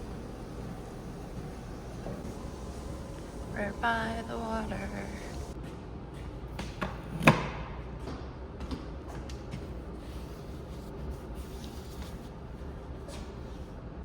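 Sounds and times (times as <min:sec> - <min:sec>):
treadmill hum: 0:00.0 - 0:06.8.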